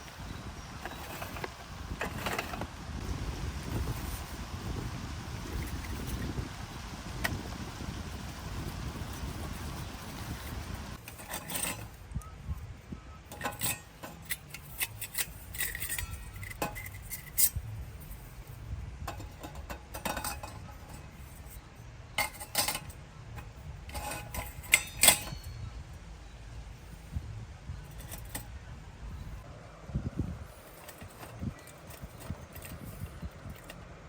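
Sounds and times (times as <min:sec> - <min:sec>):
low steady rumble: 0:00.0 - 0:34.0.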